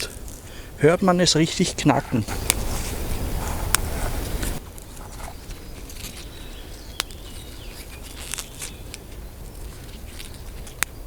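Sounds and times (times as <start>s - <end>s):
leaves snapping: 2.3s - 6.3s, 6.9s - 11.0s.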